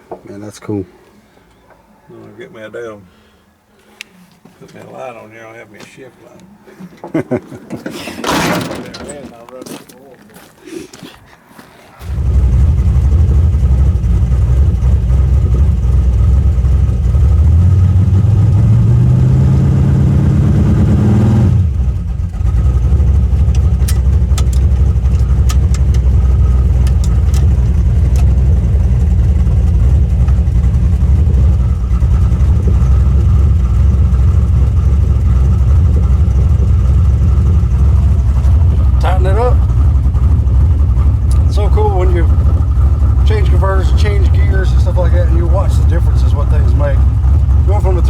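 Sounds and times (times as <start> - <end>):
car engine accelerating: 12.0 - 48.0.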